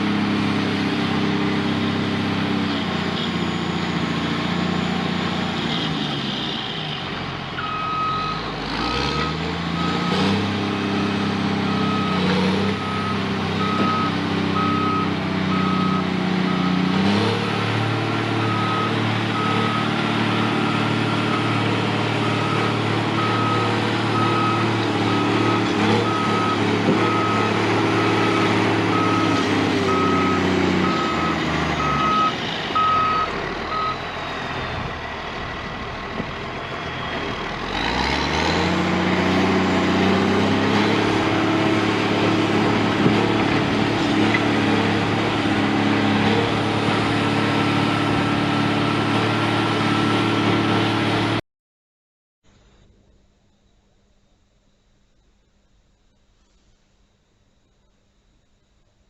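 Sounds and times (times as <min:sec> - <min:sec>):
diesel engine under load: 0:00.0 - 0:51.4
reversing alarm beeping: 0:07.6 - 0:08.4, 0:11.6 - 0:16.8, 0:20.6 - 0:34.0.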